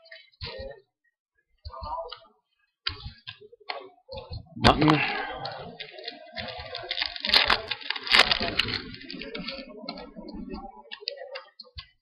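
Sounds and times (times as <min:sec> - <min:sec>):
cards crackling and rustling: 0:05.8 - 0:10.0.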